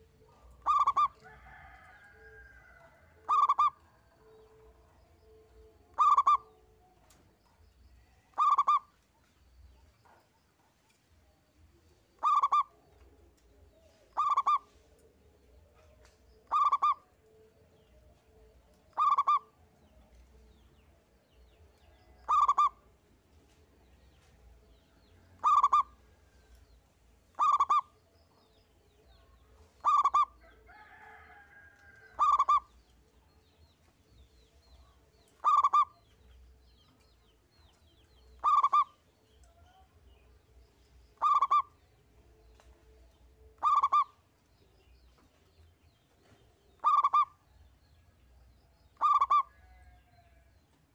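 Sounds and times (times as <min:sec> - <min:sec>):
dove cooing: 0:00.6 - 0:01.2, 0:03.2 - 0:03.8, 0:05.9 - 0:06.4, 0:08.4 - 0:08.8, 0:12.2 - 0:12.7, 0:14.2 - 0:14.7, 0:16.5 - 0:17.0, 0:19.0 - 0:19.4, 0:22.3 - 0:22.8, 0:25.4 - 0:26.0, 0:27.4 - 0:27.8, 0:29.8 - 0:30.4, 0:32.2 - 0:32.7, 0:35.4 - 0:35.9, 0:38.4 - 0:38.9, 0:41.2 - 0:41.7, 0:43.6 - 0:44.1, 0:46.8 - 0:47.3, 0:49.0 - 0:49.5.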